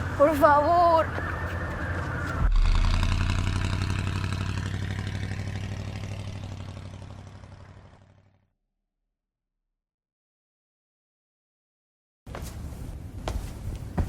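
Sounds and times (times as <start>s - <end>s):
vehicle engine humming: 0.0s - 8.4s.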